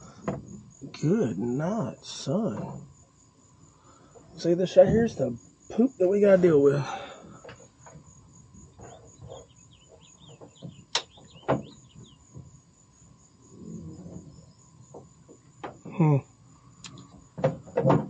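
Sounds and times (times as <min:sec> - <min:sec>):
pulsing insect trill: 0:00.0 - 0:18.0
sharp clicks and knocks: 0:16.8 - 0:18.0.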